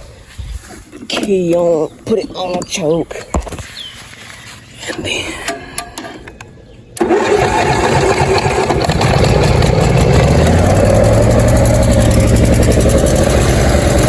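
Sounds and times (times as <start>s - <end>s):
lawn mower engine running: 7.0s - 14.0s.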